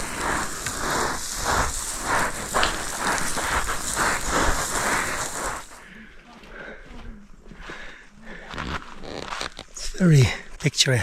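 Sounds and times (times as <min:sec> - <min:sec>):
steady hiss: 0:00.0 - 0:05.8
footsteps crunching on loose ground: 0:00.0 - 0:11.0.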